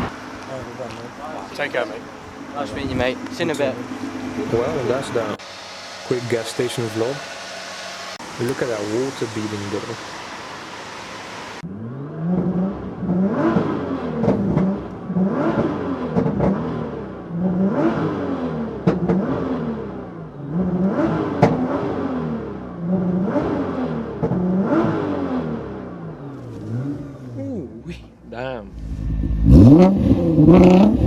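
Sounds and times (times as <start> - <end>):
car engine revving: 0.0 - 27.8, 28.7 - 31.0
exhaust pops and bangs: 13.4 - 14.8, 15.5 - 16.7, 18.8 - 19.4, 21.4 - 21.7.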